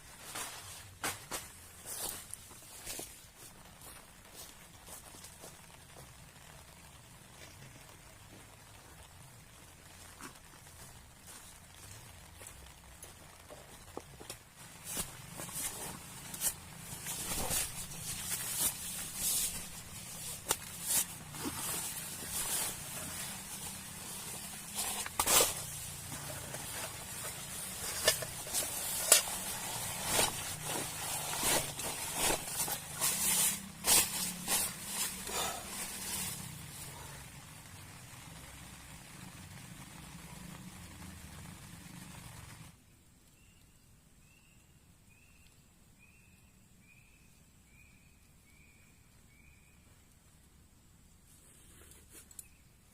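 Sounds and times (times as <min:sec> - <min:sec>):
falling rain hiss: 0:00.0 - 0:51.6.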